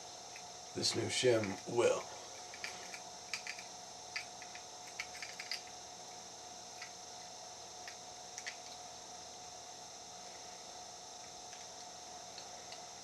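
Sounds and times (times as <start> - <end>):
steady hiss: 0.0 - 13.0.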